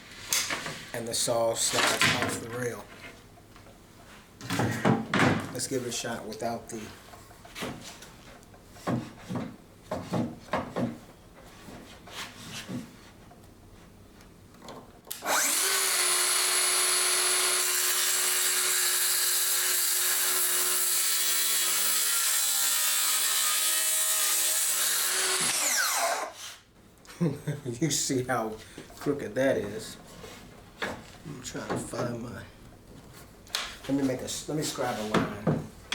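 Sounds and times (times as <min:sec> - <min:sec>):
circular saw cutting wood: 0:15.2 - 0:26.6.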